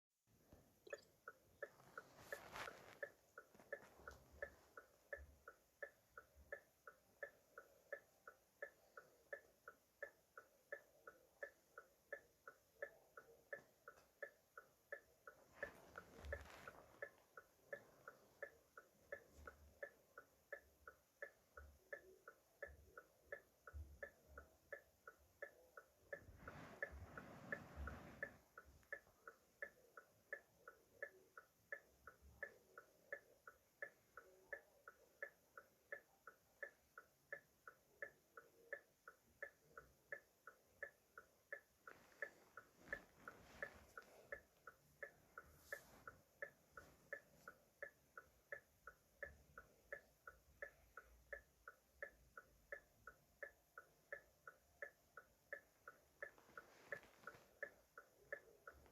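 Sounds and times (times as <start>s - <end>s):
rustling noise: 1.6s - 4.5s, 15.6s - 17.2s, 26.2s - 28.4s, 41.8s - 44.4s.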